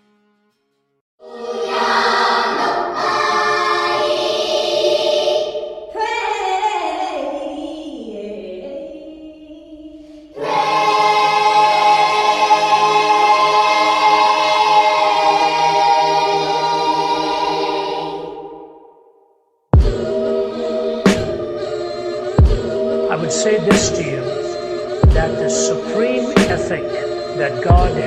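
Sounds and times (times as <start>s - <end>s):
choir singing sustained chords: 1.2s - 6.0s, 10.3s - 19.2s, 19.8s - 28.0s.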